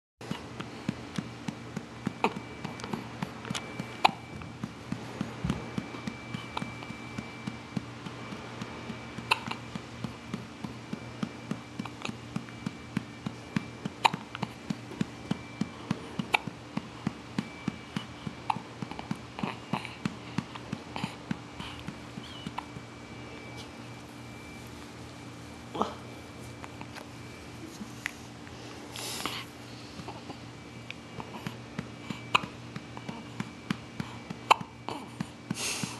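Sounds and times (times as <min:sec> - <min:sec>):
low hum: 0:00.2 - 0:35.9
baby hiccupping: 0:04.0 - 0:04.3, 0:09.2 - 0:09.7, 0:13.9 - 0:14.6, 0:16.2 - 0:16.6, 0:18.4 - 0:22.7, 0:32.3 - 0:32.6, 0:34.4 - 0:35.2.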